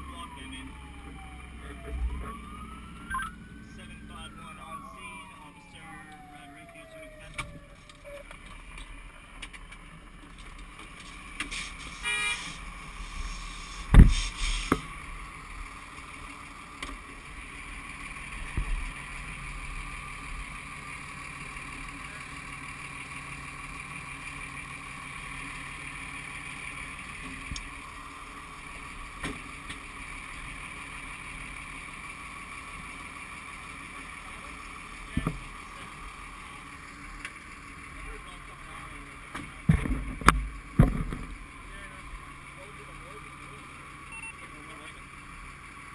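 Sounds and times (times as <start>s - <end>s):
truck engine running: 0.0s - 45.9s
loud thump: 39.7s - 41.3s.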